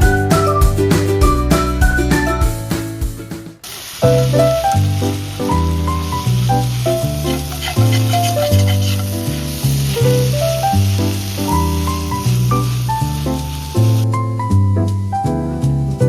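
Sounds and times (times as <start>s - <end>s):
background music: 0.0s - 16.0s
steady high hiss: 3.6s - 14.2s.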